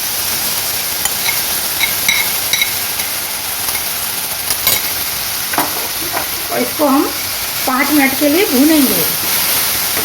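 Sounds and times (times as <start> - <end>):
leaves sizzling in hot oil: 0.0 - 10.0
metal spoon clinking on pan: 1.0 - 5.0.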